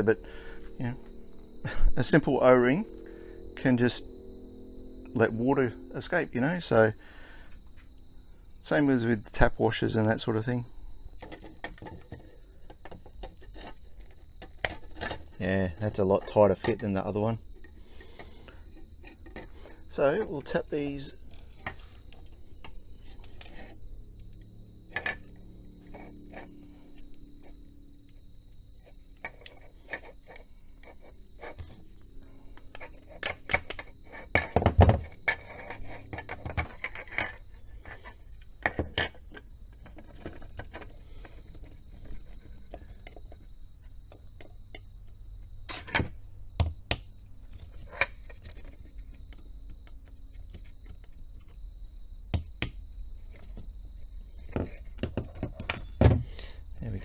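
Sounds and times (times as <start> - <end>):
hard plastic parts clicking and knocking: 11.2 - 17.8, 32.5 - 43.4, 45.7 - 51.6, 52.3 - 53.7, 54.4 - 56.3.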